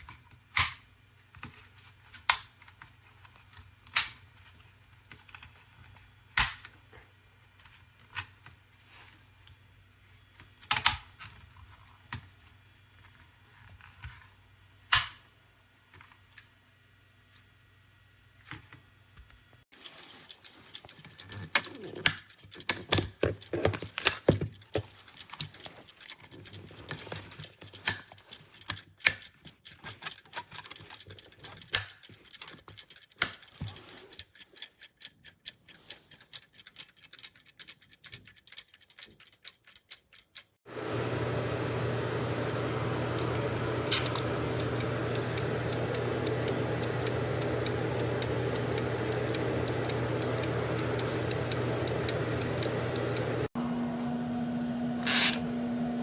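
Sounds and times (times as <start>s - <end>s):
timer switch clicking and ticking: 25.1s - 40.5s, 43.2s - 53.5s
steady hum: 40.7s - 56.0s.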